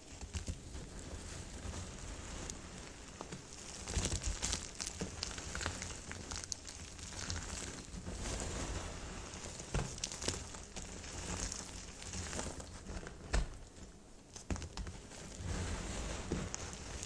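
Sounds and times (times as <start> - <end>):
brittle soap crunching as it is cut: 3.2 - 8.4, 9.4 - 13.5.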